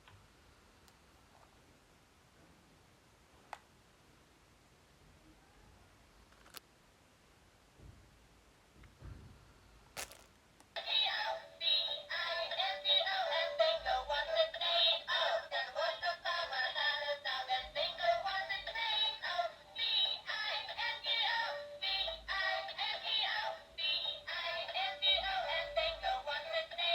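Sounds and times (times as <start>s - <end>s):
music with synthetic high singing: 10.8s - 26.9s.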